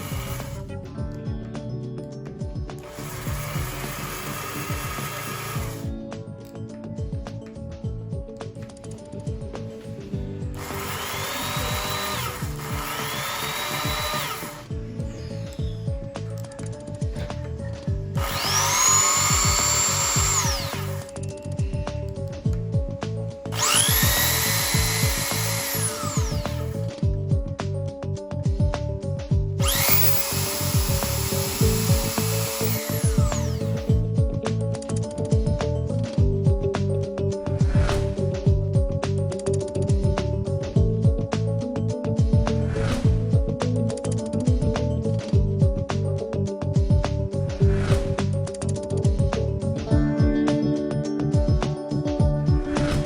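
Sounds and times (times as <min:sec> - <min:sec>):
belt sander motor whining: 0:00.0 - 0:00.6, 0:02.8 - 0:05.9, 0:10.6 - 0:15.7, 0:18.2 - 0:21.2, 0:23.5 - 0:26.9, 0:29.6 - 0:34.0
background music with steady beat: 0:00.0 - 0:53.0.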